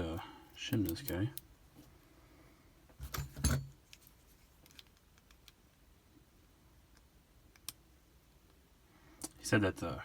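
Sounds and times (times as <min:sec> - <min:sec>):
tools being handled: 0:03.0 - 0:05.0.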